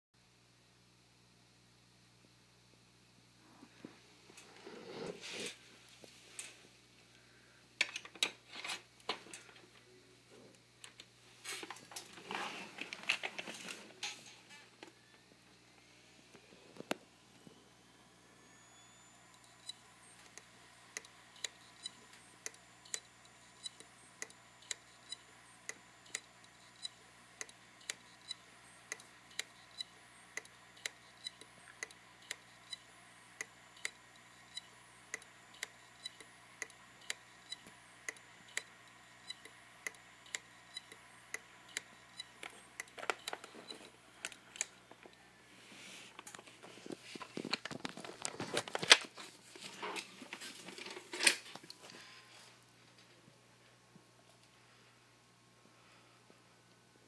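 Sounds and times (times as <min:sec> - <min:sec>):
hard drive clicking: 0:18.4 - 0:45.2.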